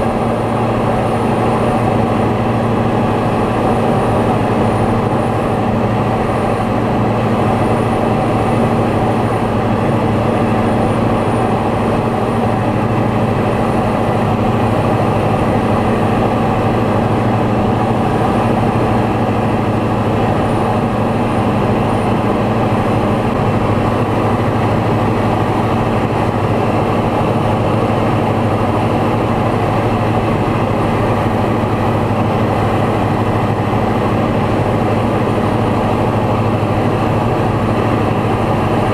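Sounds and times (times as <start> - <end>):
propeller aircraft engine droning: 0.0 - 38.9.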